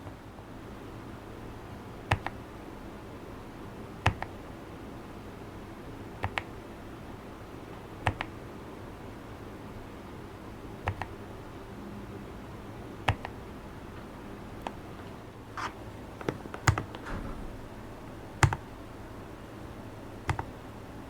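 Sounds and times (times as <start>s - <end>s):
keyboard key clicks: 2.1s - 2.4s, 4.0s - 4.4s, 6.2s - 6.5s, 8.0s - 8.4s, 10.8s - 11.1s, 13.0s - 13.4s, 15.6s - 17.7s, 18.4s - 18.7s, 20.2s - 20.5s.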